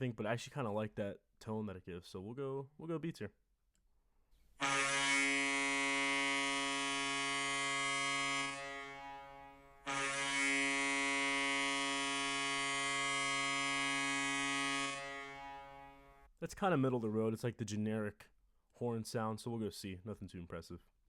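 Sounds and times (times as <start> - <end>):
goal horn blasts: 4.6 - 16.3.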